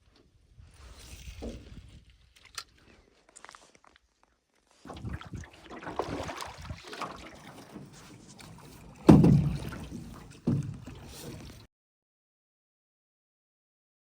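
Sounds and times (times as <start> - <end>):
water splashing: 4.9 - 11.7
boat knocking: 7.1 - 11.6
loud thumps: 9.1 - 9.9.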